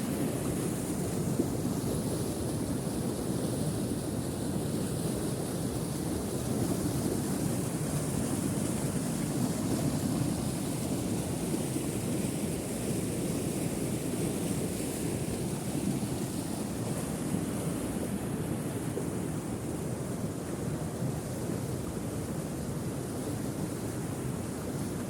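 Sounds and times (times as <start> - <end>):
river water rushing: 5.9 - 25.0.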